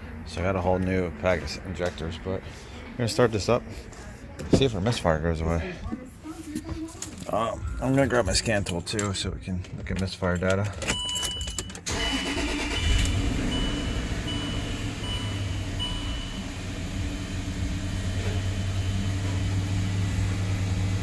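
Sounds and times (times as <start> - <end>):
car engine starting and idling: 11.8 - 21.0.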